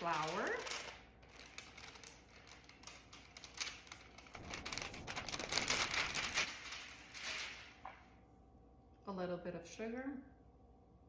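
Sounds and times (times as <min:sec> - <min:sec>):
flour rustling and crinkling: 0:00.0 - 0:08.2.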